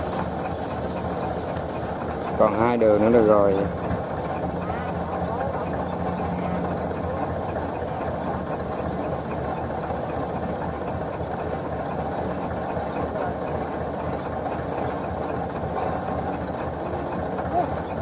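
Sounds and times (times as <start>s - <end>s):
combine harvester diesel engine: 0.0s - 18.0s.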